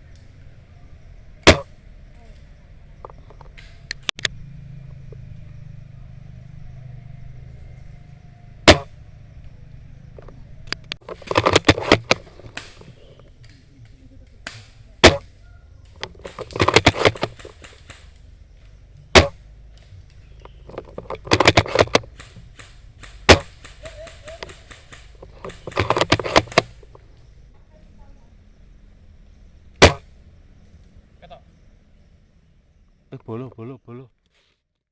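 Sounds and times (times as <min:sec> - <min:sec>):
airsoft guns firing: 0:01.4 - 0:01.8, 0:08.7 - 0:08.9, 0:14.4 - 0:15.4, 0:16.2 - 0:18.1, 0:19.2 - 0:19.4, 0:21.3 - 0:26.8, 0:29.8 - 0:30.1.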